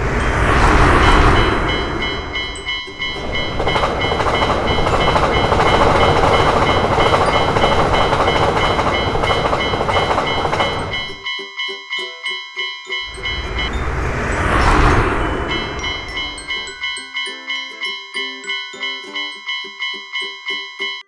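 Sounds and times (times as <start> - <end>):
train passing rumble: 0.0 - 11.3, 12.9 - 17.8
level crossing bell ringing: 0.0 - 21.0.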